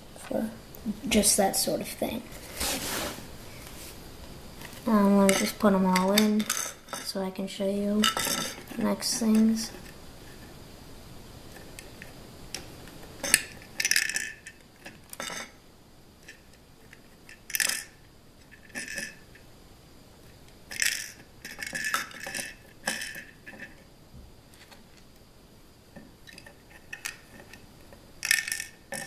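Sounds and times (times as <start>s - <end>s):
plastic pieces clicking and rattling: 13.2s - 15.5s, 17.3s - 18.0s, 18.6s - 19.4s, 20.7s - 23.8s, 28.2s - 29.0s.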